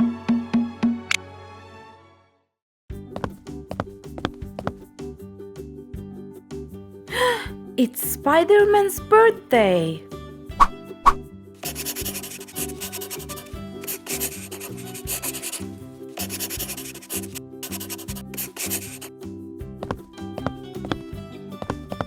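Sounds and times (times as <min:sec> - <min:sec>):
scratchy noise: 0:16.2 - 0:19.1.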